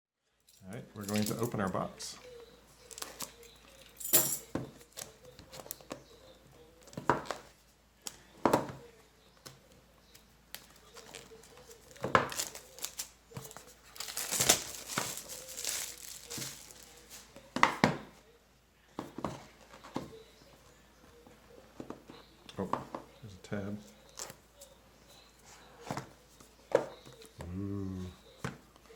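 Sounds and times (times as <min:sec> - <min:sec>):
packaging crinkling: 0:10.6 - 0:17.3
packaging rustling: 0:10.6 - 0:17.3.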